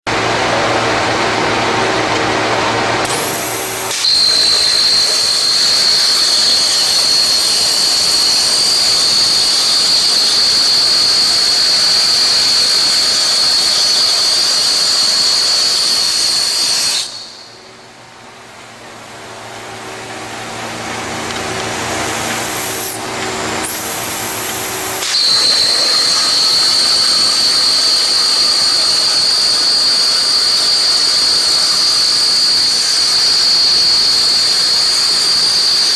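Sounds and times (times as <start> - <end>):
plasma torch cutting metal: 3.0 - 17.4, 21.9 - 35.9
machine low hum: 17.2 - 32.0.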